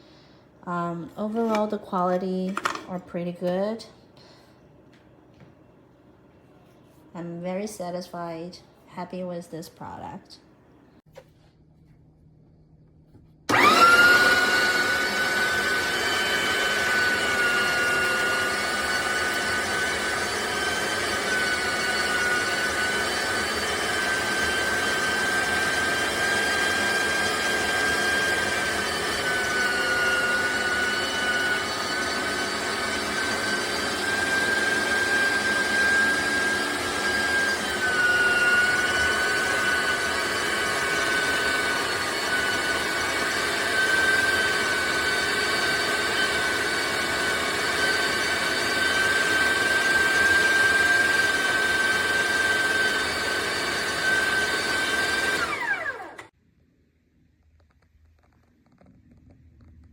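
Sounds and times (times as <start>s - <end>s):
electric meat grinder whining: 13.5s - 56.3s.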